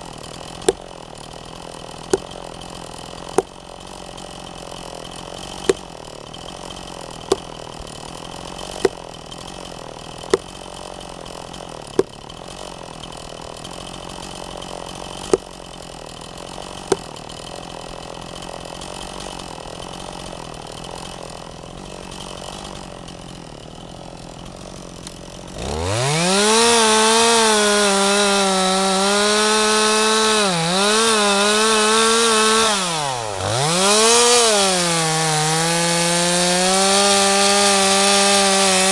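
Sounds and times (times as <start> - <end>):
engine hum: 0.0 - 18.4
chainsaw cutting wood: 0.0 - 38.9.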